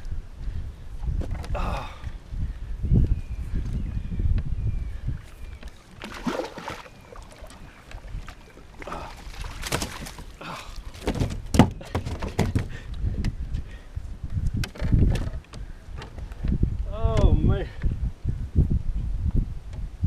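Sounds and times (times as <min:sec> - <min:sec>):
water splashes: 0:05.8 - 0:11.2.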